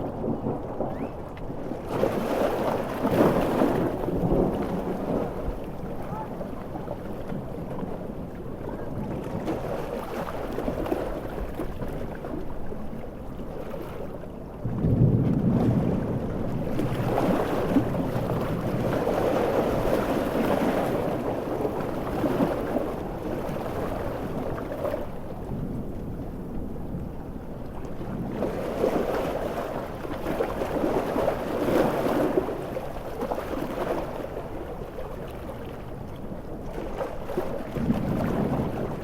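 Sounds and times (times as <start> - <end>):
rain: 0.0 - 9.7, 14.5 - 31.4, 37.5 - 39.0
heavy surf: 0.0 - 13.0, 13.6 - 39.0
wind: 0.0 - 39.0.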